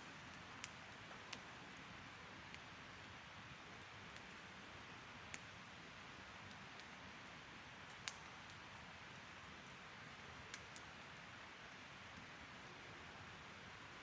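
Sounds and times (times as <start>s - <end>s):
fire crackling pops: 0.0s - 3.2s, 5.2s - 5.8s, 6.4s - 8.8s, 10.5s - 11.2s.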